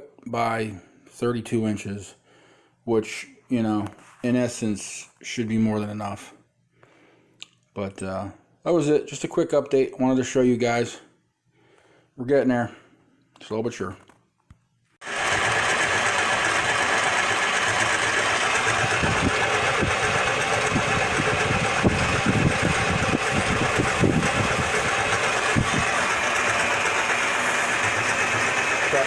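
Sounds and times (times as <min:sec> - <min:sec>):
machine motor running: 0:15.0 - 0:29.0.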